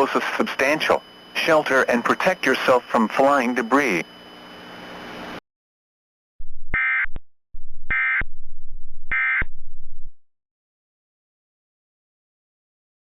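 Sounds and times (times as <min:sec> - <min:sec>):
buzzy electronic data tones: 0:00.0 - 0:05.3, 0:06.8 - 0:07.1, 0:07.9 - 0:08.2, 0:09.1 - 0:09.5.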